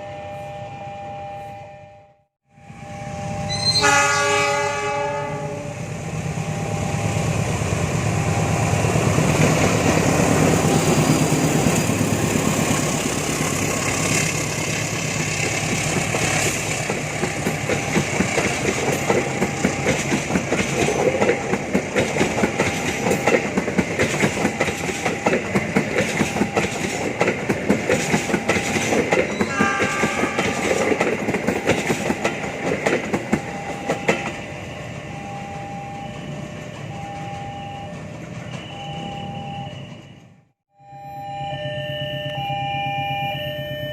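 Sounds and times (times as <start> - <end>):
train engine rumble: 2.5 - 40.6
short train horn: 3.0 - 5.8, 29.4 - 30.7
train wheels clattering over rail joints: 15.2 - 34.4.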